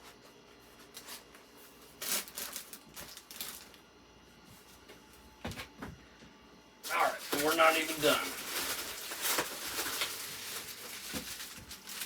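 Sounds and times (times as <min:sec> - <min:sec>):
packaging rustling: 0:02.0 - 0:03.8, 0:06.9 - 0:12.0.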